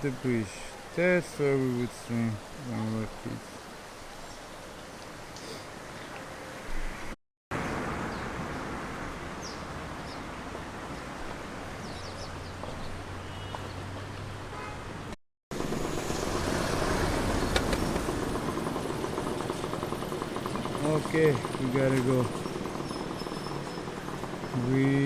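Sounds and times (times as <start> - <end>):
low engine hum: 15.6 - 25.0.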